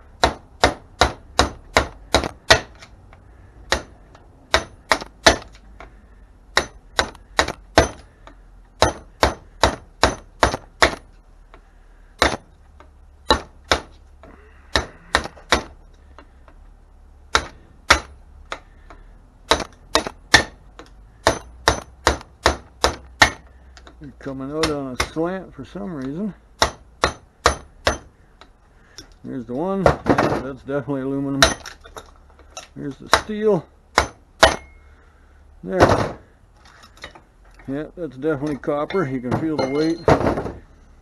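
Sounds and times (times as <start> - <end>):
hammer clanking on metal: 0.2 - 2.8, 3.7 - 5.6, 6.5 - 8.2, 8.8 - 11.1, 12.2 - 12.5, 13.2 - 14.0, 17.3 - 18.7, 19.5 - 23.5, 26.6 - 28.1, 31.4 - 32.0, 34.0 - 34.8, 38.5 - 40.6.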